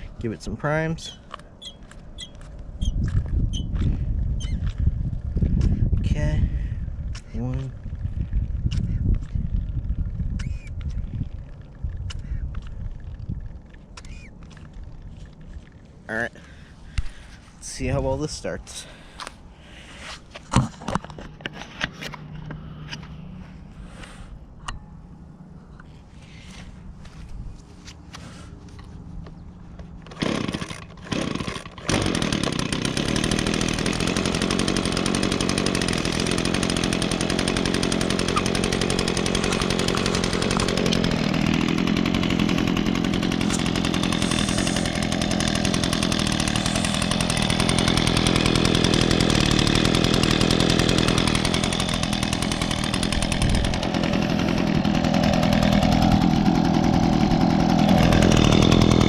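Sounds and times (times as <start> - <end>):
leaf blower engine running: 16.3 - 20.0, 29.6 - 59.0.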